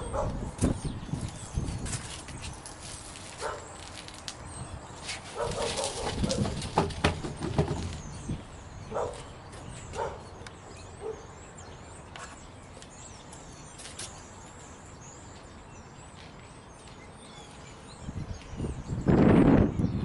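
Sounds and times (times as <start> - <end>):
dog barking loudly: 0.0 - 0.5, 3.4 - 3.7, 5.4 - 6.5, 8.9 - 9.2, 10.0 - 10.3
birds chirping faintly: 0.0 - 20.0.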